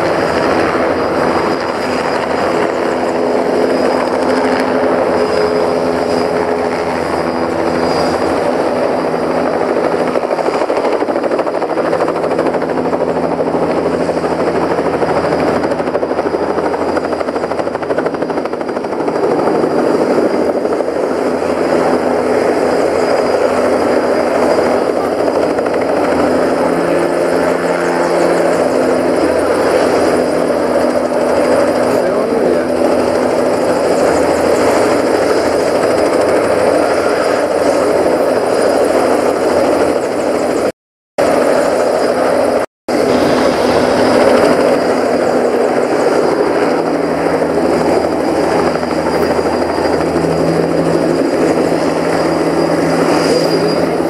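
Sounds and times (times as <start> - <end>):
helicopter engine and rotor: 0.0 - 54.0
thin high whine: 41.2 - 54.0.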